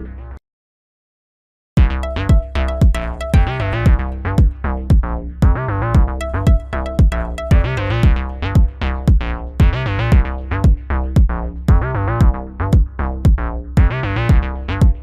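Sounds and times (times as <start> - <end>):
electronic music with sliding melody: 1.8 - 10.1.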